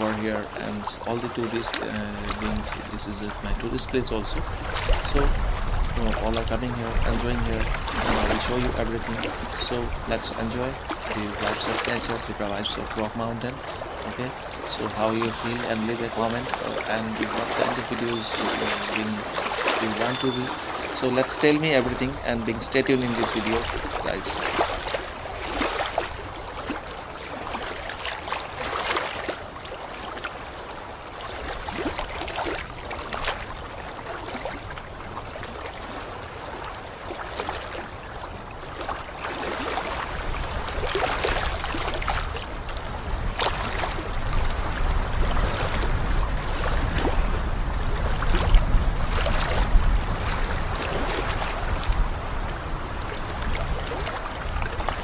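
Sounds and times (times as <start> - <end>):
waterfall rushing water: 0.0 - 32.8.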